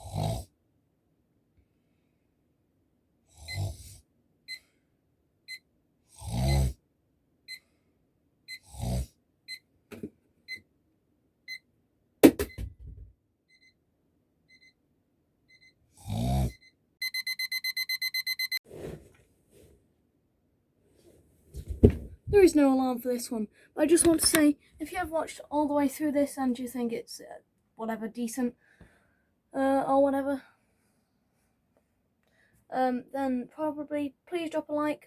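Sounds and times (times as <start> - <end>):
person snoring: 0.0 - 0.5, 3.4 - 4.0, 6.2 - 6.8, 8.6 - 9.1, 16.0 - 16.6
alarm clock beeping: 14.5 - 14.8, 16.5 - 18.6.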